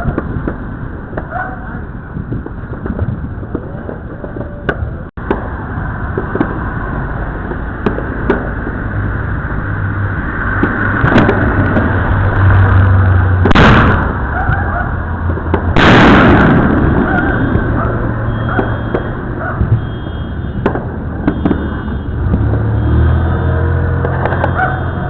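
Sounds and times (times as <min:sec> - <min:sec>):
sharp firework pops: 0:00.0 - 0:01.4, 0:02.2 - 0:06.8, 0:07.4 - 0:09.1, 0:10.4 - 0:12.8, 0:13.4 - 0:19.9, 0:20.5 - 0:22.7, 0:24.0 - 0:24.8
fireworks crackling: 0:00.0 - 0:25.0
loud firework explosions: 0:00.0 - 0:25.0.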